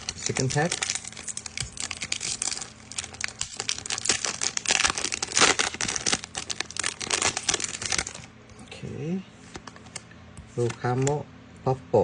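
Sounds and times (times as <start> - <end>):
foil wrapper crinkling: 0.0 - 8.3.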